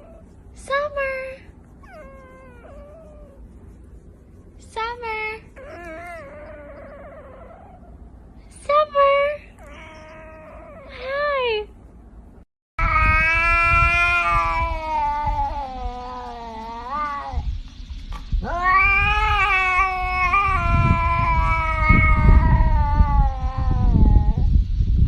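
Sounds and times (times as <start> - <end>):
low rumbling noise: 0.0 - 25.0
cat yowling: 1.8 - 3.5, 9.6 - 11.1, 12.8 - 17.5, 18.4 - 24.5.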